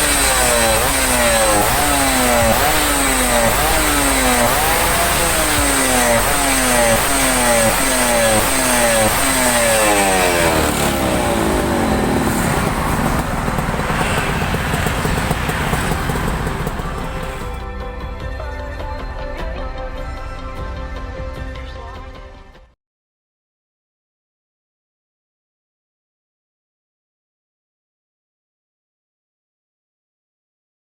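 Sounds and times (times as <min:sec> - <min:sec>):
motorcycle engine revving: 0:00.0 - 0:17.6
steady rushing noise: 0:00.0 - 0:17.6.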